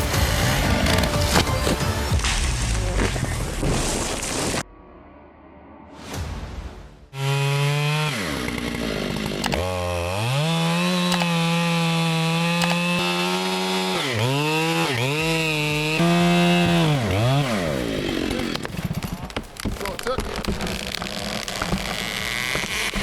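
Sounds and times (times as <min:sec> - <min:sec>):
chainsaw revving: 0:00.0 - 0:01.9, 0:07.2 - 0:23.0.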